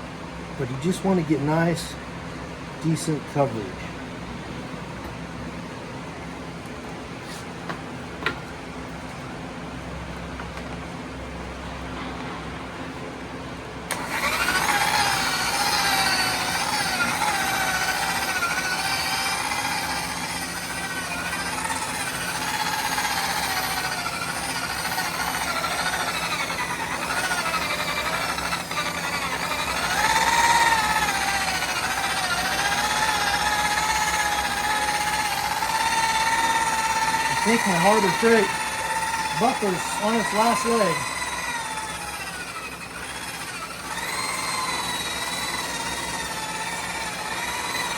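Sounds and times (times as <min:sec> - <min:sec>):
electric buffer motor whine: 0:13.9 - 0:47.9.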